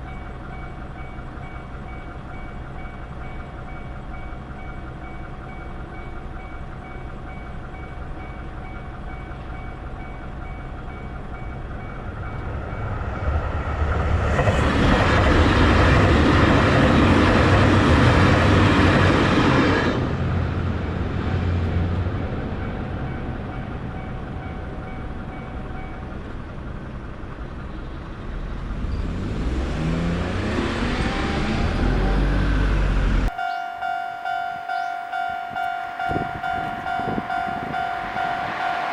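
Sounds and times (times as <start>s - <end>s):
level crossing warning bell: 0.0s - 13.6s, 21.7s - 26.6s, 33.3s - 38.9s
train passing loudly: 4.6s - 27.4s, 28.2s - 38.9s
train motor whine: 30.9s - 38.9s
quick pulsing crossing bell: 33.4s - 38.9s.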